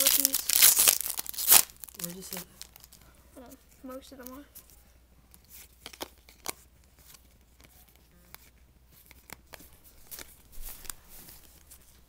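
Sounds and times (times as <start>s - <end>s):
trading cards clicking and rustling: 4.1s - 11.8s.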